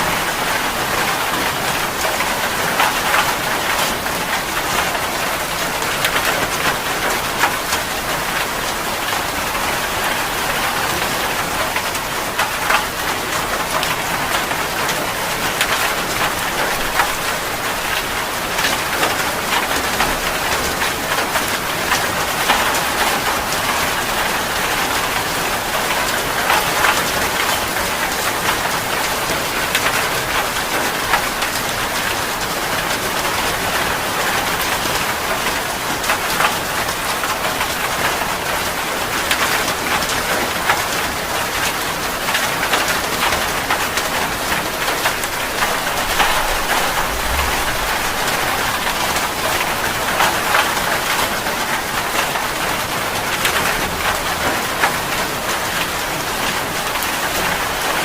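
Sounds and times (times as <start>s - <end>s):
heavy rain falling: 0.0s - 58.0s
raindrop hits: 43.6s - 51.2s.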